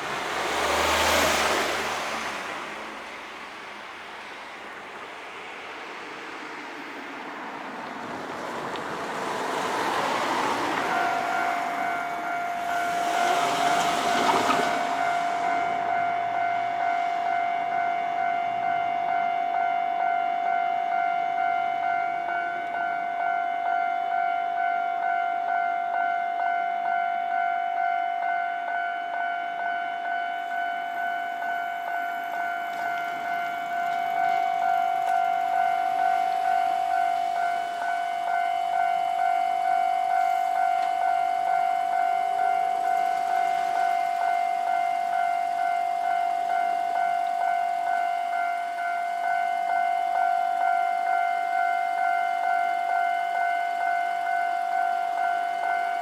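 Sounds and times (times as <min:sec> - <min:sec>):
rushing noise: 0:09.0 - 0:18.6
higher bell tone: 0:10.6 - 0:56.0.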